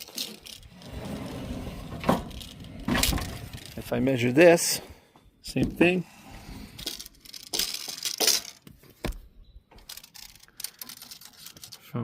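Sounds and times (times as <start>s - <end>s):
tape measure rattling: 0.0s - 1.6s, 6.8s - 8.7s, 9.8s - 11.8s.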